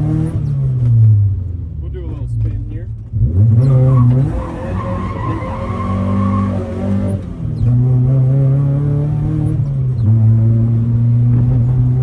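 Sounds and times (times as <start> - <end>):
car engine revving: 2.4 - 12.0
tyre squeal: 3.6 - 7.7.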